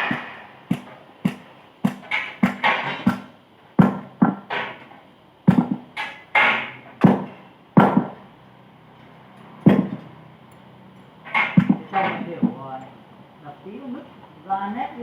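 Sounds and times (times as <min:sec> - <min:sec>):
hammer striking steel: 0:00.0 - 0:04.8, 0:05.5 - 0:08.2, 0:09.6 - 0:10.1, 0:11.2 - 0:12.4.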